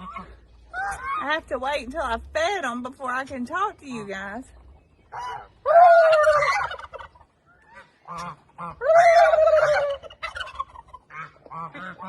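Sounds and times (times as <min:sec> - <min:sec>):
young pigs squealing: 0:00.0 - 0:01.4, 0:05.1 - 0:12.0.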